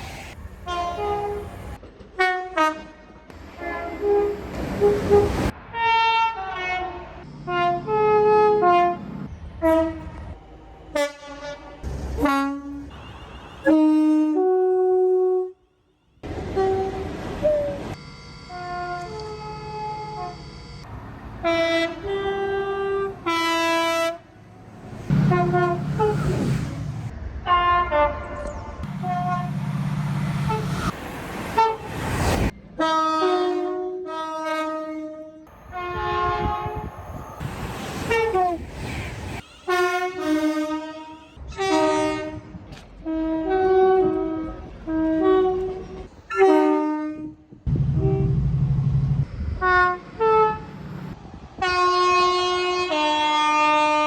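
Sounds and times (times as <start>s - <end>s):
train running noise: 0.0s - 13.4s, 16.2s - 27.4s, 28.5s - 32.9s, 35.5s - 46.3s, 47.6s - 53.0s
two-tone train horns: 0.6s - 10.3s, 10.9s - 37.5s, 39.6s - 48.5s, 49.5s - 54.0s.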